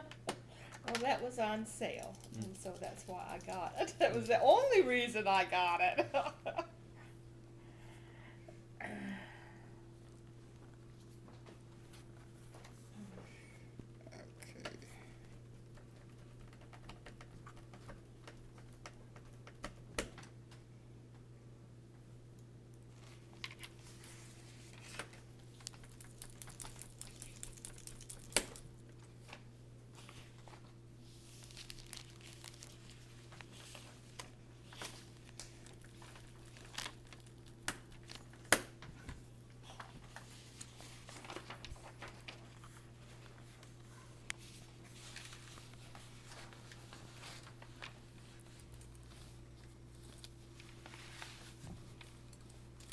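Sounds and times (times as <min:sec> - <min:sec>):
steady low hum: 0:00.0 - 0:52.9
packaging crinkling: 0:24.6 - 0:28.9, 0:30.0 - 0:38.8, 0:40.1 - 0:43.7.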